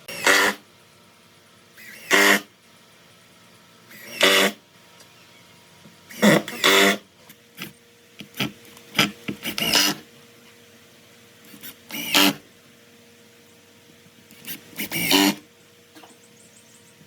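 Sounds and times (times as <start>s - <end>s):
faint steady hum: 0.0s - 17.0s
hand tool scraping wood: 7.6s - 10.0s.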